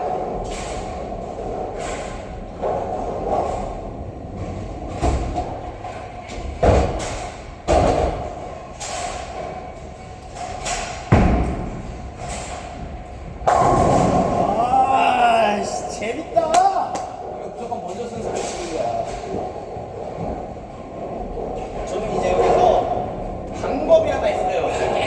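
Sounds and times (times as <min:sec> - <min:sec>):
bowling balls rolling: 0:00.0 - 0:25.0
balls thudding and pins crashing: 0:10.3 - 0:14.6.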